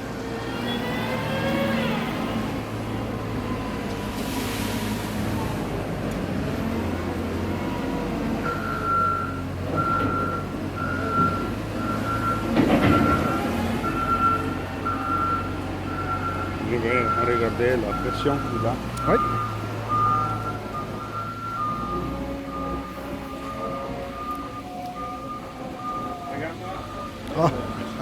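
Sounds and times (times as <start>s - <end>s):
reversing alarm beeping: 8.4s - 28.0s.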